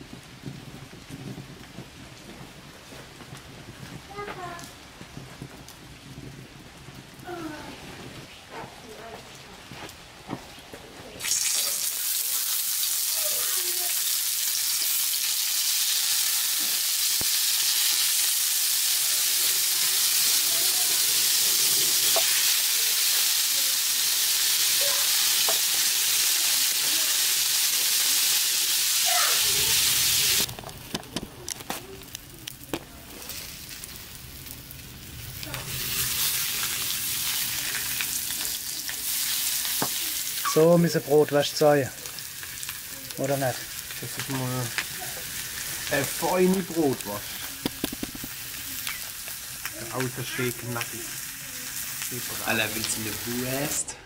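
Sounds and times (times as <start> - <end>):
sausages sizzling in a frying pan: 11.2 - 54.0.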